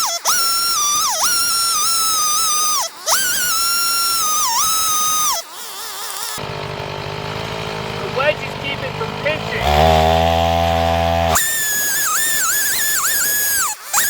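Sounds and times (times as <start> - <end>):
chainsaw engine running: 6.0 - 13.6.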